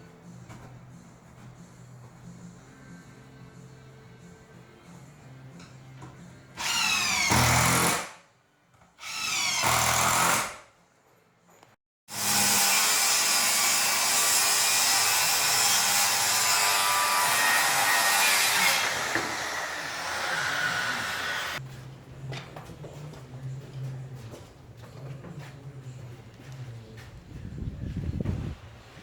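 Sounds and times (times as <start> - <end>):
power tool running steadily: 12.1 - 21.6
power drill whining: 18.5 - 21.6.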